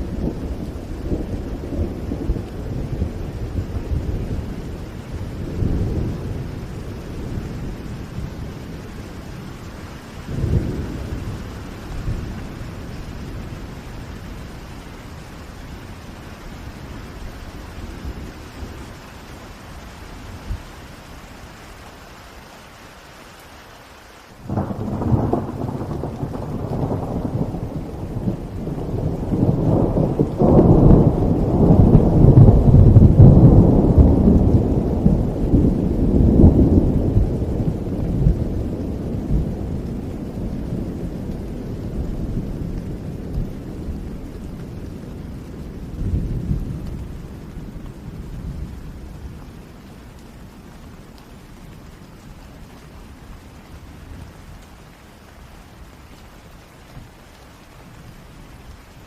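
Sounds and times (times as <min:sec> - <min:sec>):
rolling thunder: 0:00.0 - 0:14.5, 0:24.4 - 0:50.0
rain falling: 0:00.0 - 0:59.0.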